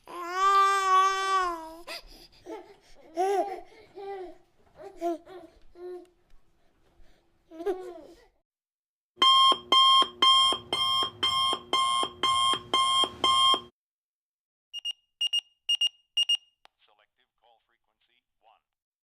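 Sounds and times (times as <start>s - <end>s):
alarm clock beeping: 9.2s - 13.7s, 14.8s - 16.4s
short high beeps: 14.8s - 16.5s.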